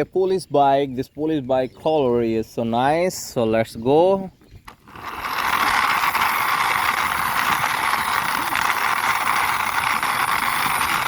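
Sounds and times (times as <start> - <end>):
toy plastic wheels rolling: 4.6 - 11.0.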